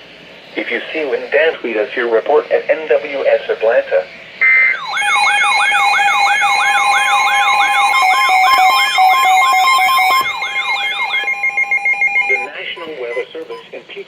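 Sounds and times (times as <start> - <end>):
electronic yelp siren: 4.4 - 13.4
electronic beep: 4.4 - 13.8
steady high tones: 4.4 - 13.8.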